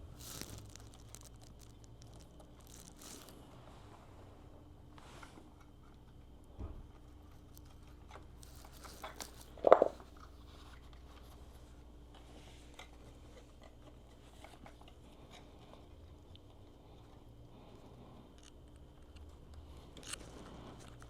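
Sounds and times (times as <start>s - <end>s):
small clicks and rattles: 0.1s - 3.4s.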